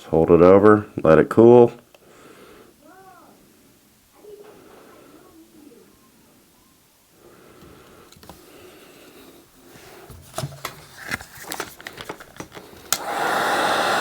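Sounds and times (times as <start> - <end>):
plastic parts clicking: 10.3 - 13.0
heat gun blowing air: 12.8 - 14.0.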